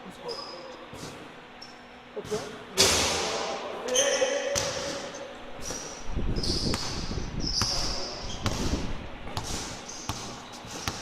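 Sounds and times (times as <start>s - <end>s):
short high squeaks: 3.9s - 8.5s
basketball bouncing on court: 4.5s - 11.0s.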